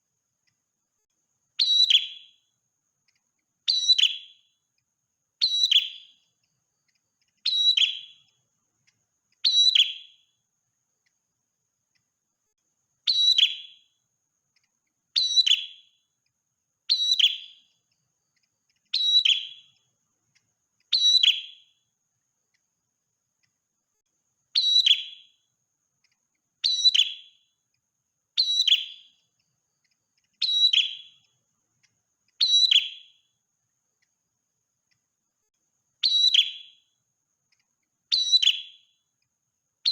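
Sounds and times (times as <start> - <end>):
songbird high whistled call: 1.6 - 2.5, 3.6 - 4.6, 5.4 - 6.3, 7.2 - 8.4, 9.4 - 10.4, 13.0 - 14.0, 15.1 - 16.0, 16.9 - 17.8, 18.7 - 19.9, 20.8 - 21.8, 24.5 - 25.5, 26.6 - 27.5, 28.4 - 29.3, 30.2 - 31.4, 32.3 - 33.3, 36.0 - 36.9, 38.1 - 39.0.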